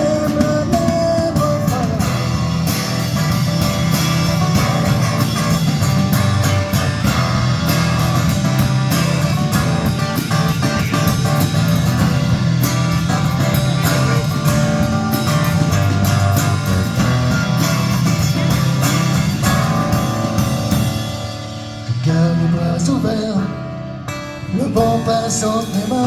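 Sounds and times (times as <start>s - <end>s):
instrumental rock music: 0.0s - 26.0s.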